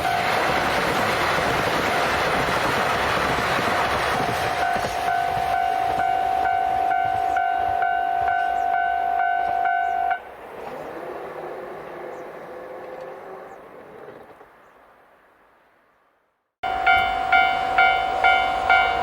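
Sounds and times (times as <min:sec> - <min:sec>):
diesel train rumbling: 0:00.0 - 0:14.6, 0:16.6 - 0:19.0
level crossing alarm ringing: 0:04.6 - 0:10.2, 0:16.6 - 0:19.0.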